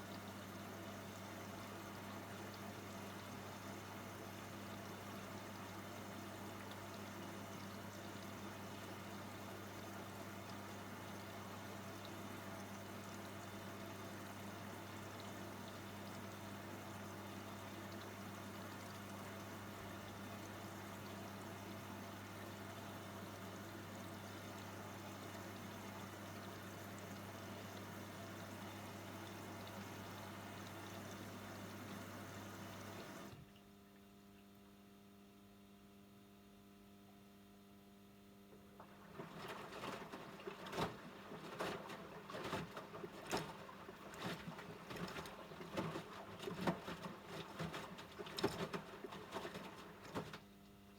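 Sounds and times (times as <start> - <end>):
water rushing into washing machine: 0.0 - 33.5, 38.5 - 50.5
inlet valve mains hum: 19.4 - 50.9
knocks and sloshing of wash load: 38.6 - 50.5.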